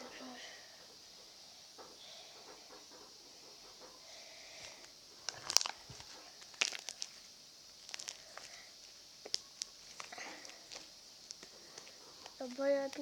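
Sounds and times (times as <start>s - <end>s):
slime crackling pops: 5.3s - 5.8s, 6.4s - 7.2s.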